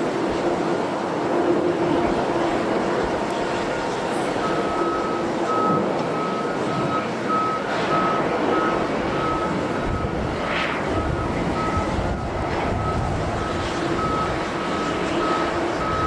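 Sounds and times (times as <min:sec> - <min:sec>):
loud steady rushing noise: 0:00.0 - 0:16.0
reversing alarm beeping: 0:04.4 - 0:16.0.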